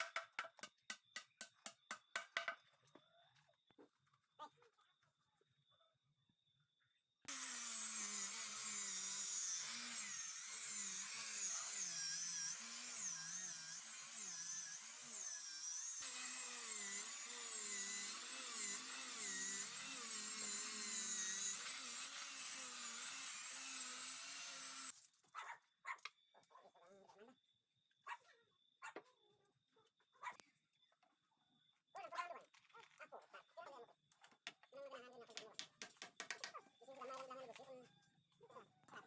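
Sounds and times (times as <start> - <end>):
power tool motor whining: 7.3 - 25.0.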